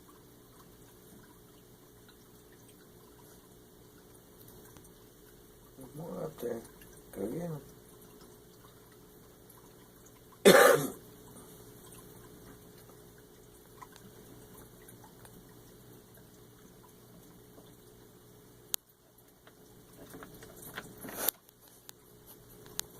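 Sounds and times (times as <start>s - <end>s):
faint ticks: 0.0s - 7.1s, 11.2s - 22.9s
person coughing: 10.4s - 11.0s.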